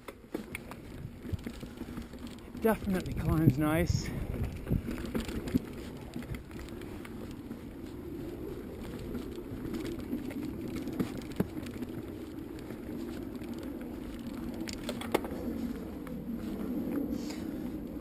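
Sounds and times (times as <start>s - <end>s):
bike clicks and knocks: 0.0s - 17.4s
bike tyres rolling over dirt: 0.0s - 18.0s.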